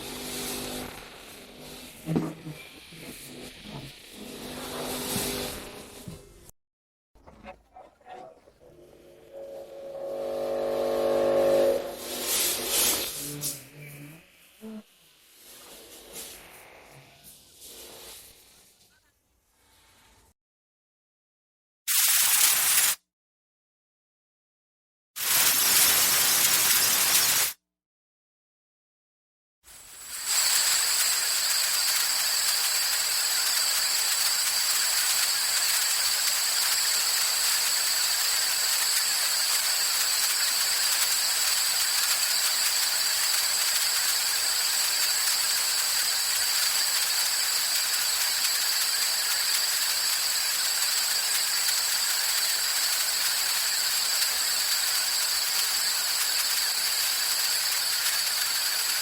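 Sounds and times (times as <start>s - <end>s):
pressurised gas jet hissing: 0.0s - 6.5s, 9.3s - 18.8s
thin high whistle: 9.1s - 13.6s.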